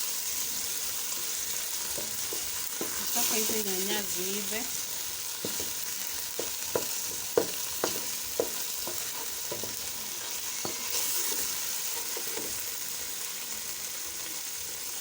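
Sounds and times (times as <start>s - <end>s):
food sizzling in a pot: 0.0s - 15.0s
spoon stirring and knocking pot: 1.1s - 3.7s, 5.4s - 12.6s.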